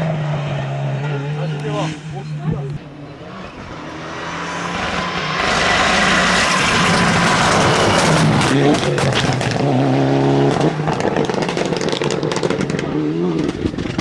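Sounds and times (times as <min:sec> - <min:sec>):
engine crackles: 0:00.0 - 0:14.0
rally car engine passing: 0:00.0 - 0:14.0.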